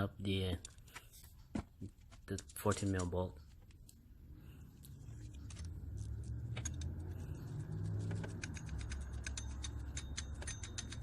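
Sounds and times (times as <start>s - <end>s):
ratchet wrench clicking: 6.0s - 11.0s.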